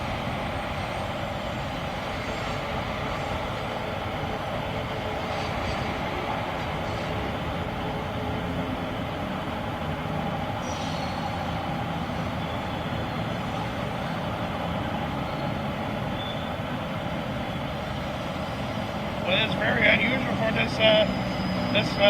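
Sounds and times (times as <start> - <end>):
train rumbling on rails: 0.0 - 22.0.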